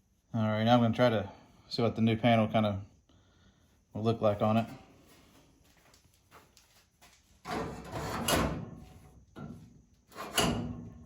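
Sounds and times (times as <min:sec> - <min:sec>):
sheet metal scraping and rattling: 0:07.4 - 0:11.0.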